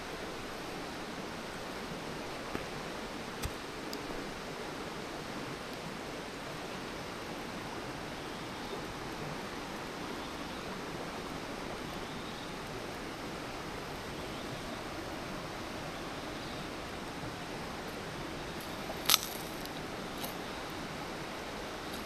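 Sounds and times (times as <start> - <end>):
campfire hissing: 0.0 - 22.0
fire crackling pop: 18.6 - 20.4.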